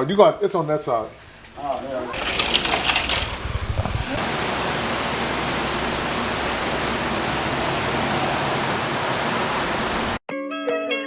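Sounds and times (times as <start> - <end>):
steady rushing hiss: 0.7 - 10.2
rustling handling noises: 1.1 - 4.2.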